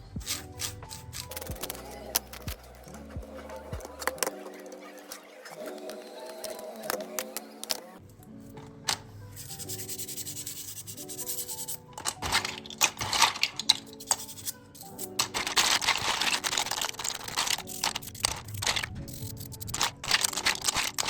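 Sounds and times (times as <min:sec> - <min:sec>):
background music of held notes: 0:00.0 - 0:21.0
scrubbing keyboard: 0:08.6 - 0:21.0.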